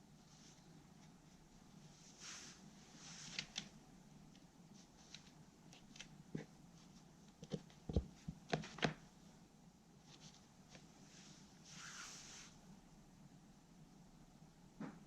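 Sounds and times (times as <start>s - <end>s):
soft scraping rustle: 0.2s - 3.7s, 10.0s - 12.6s.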